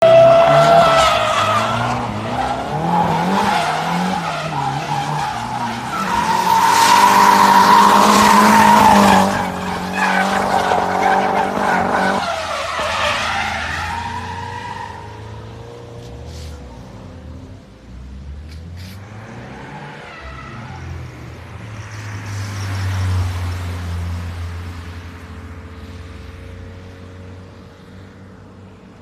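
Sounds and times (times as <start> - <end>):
tyres squealing: 0.0 - 15.1.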